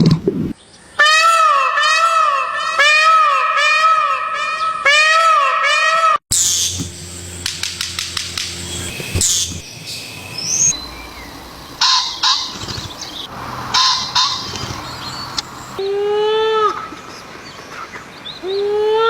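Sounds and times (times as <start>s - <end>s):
harsh bird calls: 6.3s - 15.9s
bird clicking: 7.4s - 15.8s.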